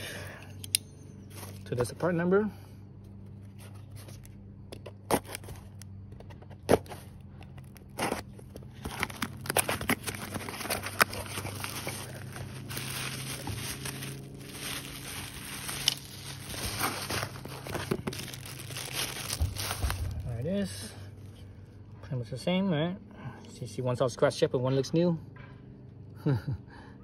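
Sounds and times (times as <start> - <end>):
packaging crinkling: 6.6 - 20.4.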